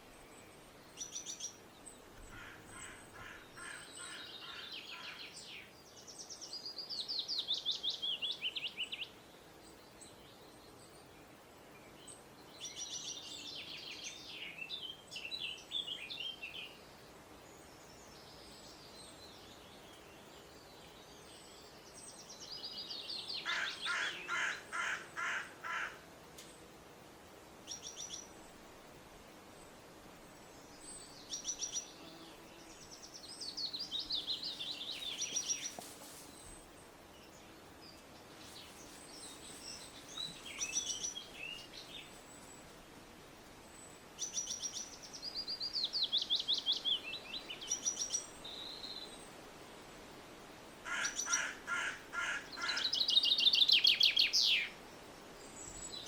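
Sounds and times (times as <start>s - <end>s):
songbirds singing high trills: 30.6s - 42.7s, 43.7s - 49.4s, 52.4s - 56.0s.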